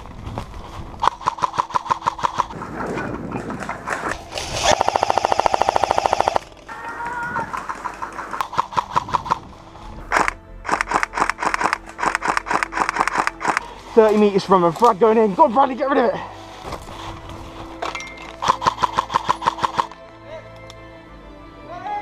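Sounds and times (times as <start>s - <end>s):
airsoft rifles firing bursts: 1.0s - 2.6s, 4.3s - 6.5s, 7.6s - 9.4s, 10.1s - 13.6s, 18.4s - 19.9s.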